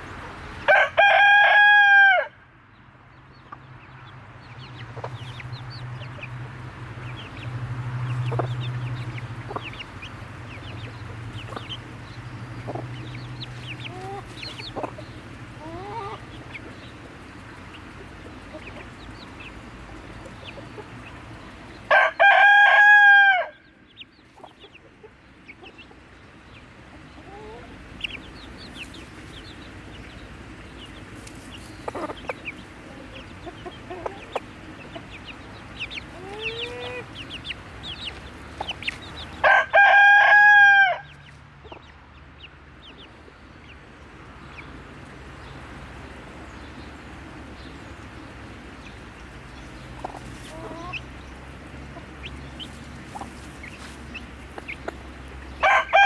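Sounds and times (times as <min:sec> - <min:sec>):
rooster crowing: 0:00.7 - 0:02.4, 0:21.9 - 0:23.7, 0:39.4 - 0:41.2, 0:55.6 - 0:56.0
chickens clucking: 0:03.3 - 0:23.3, 0:23.9 - 0:56.0.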